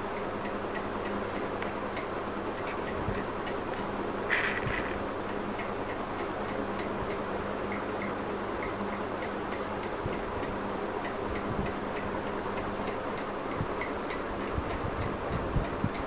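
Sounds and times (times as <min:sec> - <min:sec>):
refrigerator humming: 0:00.0 - 0:06.8.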